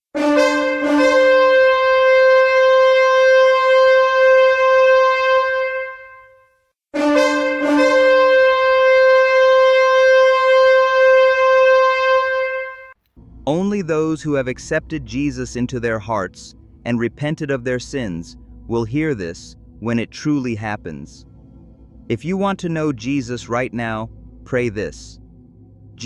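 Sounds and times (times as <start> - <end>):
horn blasts: 0.1 - 13.5.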